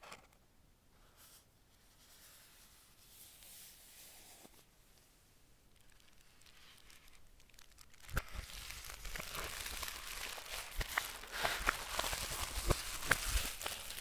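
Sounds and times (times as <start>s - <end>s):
packaging crinkling and tearing: 5.7s - 14.0s.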